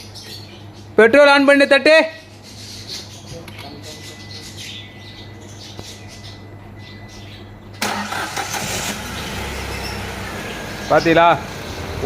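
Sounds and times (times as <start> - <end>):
car engine cranking and starting: 7.8 - 12.0.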